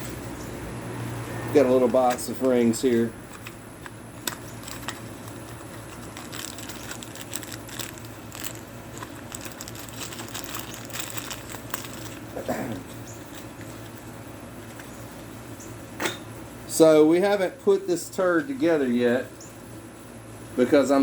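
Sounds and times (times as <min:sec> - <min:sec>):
steady low hum: 0:00.0 - 0:21.0
hands handling small box: 0:03.3 - 0:12.3.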